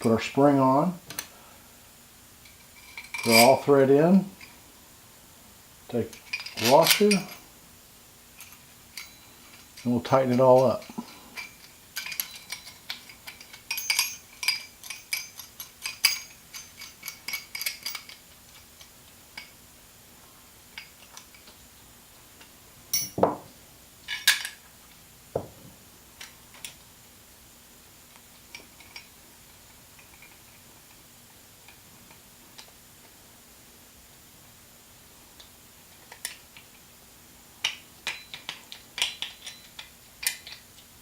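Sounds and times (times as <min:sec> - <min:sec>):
wrenches clinking on metal: 0:02.6 - 0:03.7, 0:06.1 - 0:07.5, 0:08.4 - 0:18.2, 0:38.0 - 0:40.6.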